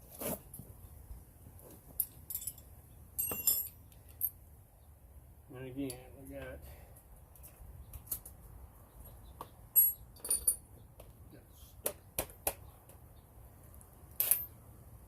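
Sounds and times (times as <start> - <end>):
metal tools clinking: 2.0 - 4.4, 9.8 - 10.7, 14.2 - 14.5.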